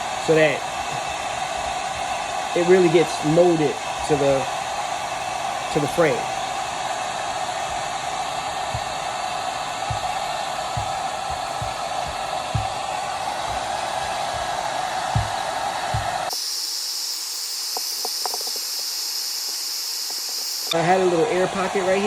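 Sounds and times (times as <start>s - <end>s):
hot-air blower running: 0.0s - 22.0s
soft low handling knocks: 9.8s - 16.3s.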